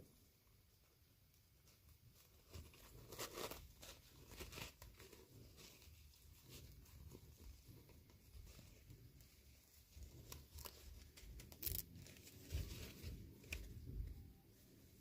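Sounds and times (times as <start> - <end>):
packaging torn and crinkled: 10.3 - 12.3.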